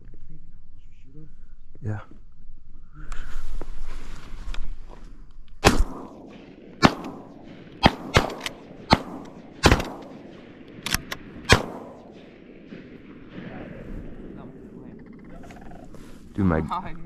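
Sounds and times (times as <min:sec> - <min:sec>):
shotgun shots with echo: 0:05.6 - 0:14.4.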